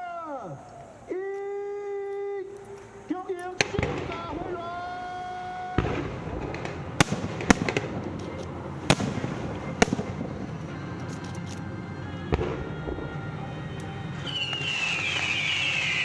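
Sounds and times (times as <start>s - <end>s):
fireworks crackling: 2.4s - 16.0s
fireworks bangs: 3.6s - 11.2s, 12.3s - 16.0s.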